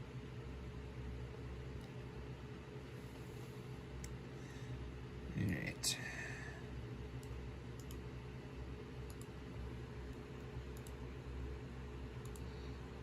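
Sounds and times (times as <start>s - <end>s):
steady low hum: 0.0s - 13.0s
faint computer clicks: 7.2s - 8.0s, 9.0s - 9.4s, 10.7s - 11.0s, 12.2s - 12.5s.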